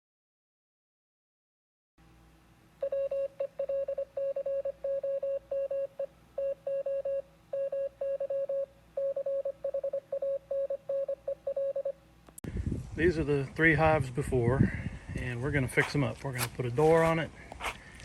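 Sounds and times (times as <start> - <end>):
faint hum: 2.0 - 15.8
electronic beeps like morse code: 2.8 - 12.0.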